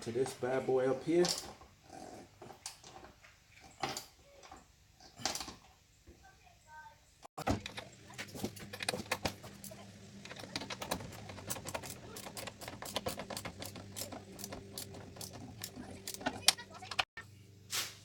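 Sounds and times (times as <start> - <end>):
ratchet wrench clicking: 9.7 - 17.0.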